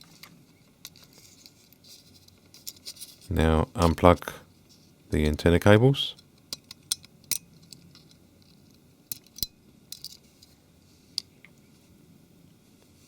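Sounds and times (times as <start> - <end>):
tool clicking and scraping connectors: 3.8 - 4.2.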